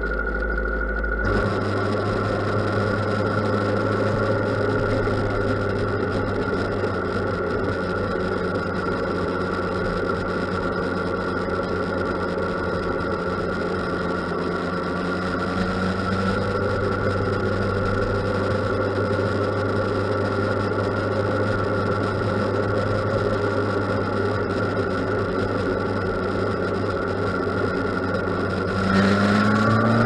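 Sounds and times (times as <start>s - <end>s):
motorcycle engine running and revving: 0.0s - 30.0s.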